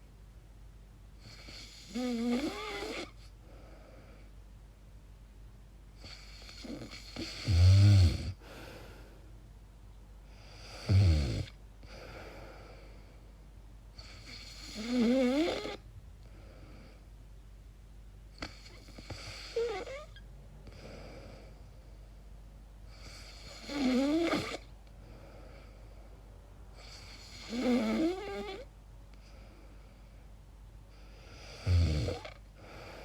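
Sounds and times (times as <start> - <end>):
woman snoring: 1.2 - 3.2, 6.0 - 8.8, 10.5 - 12.7, 14.0 - 15.8, 18.4 - 21.6, 23.0 - 24.7, 26.8 - 28.7, 31.3 - 33.0.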